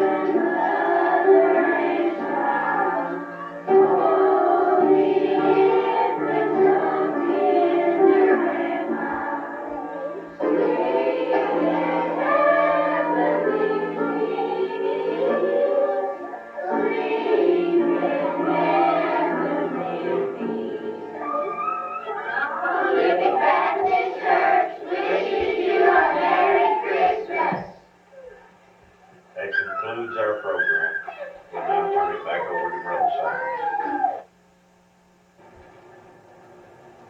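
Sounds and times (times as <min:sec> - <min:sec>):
choir singing a hymn: 0:00.0 - 0:27.8.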